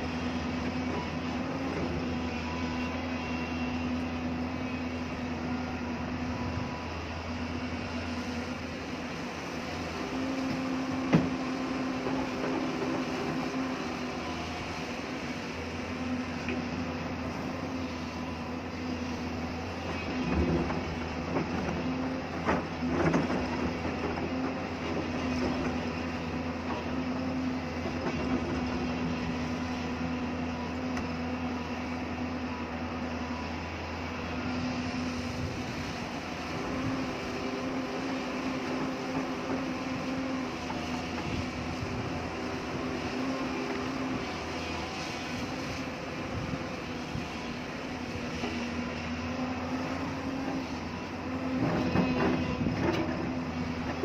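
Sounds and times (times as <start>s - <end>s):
excavator diesel engine running: 0.0s - 54.0s
excavator knocks and scrapes on rock: 51.5s - 53.3s.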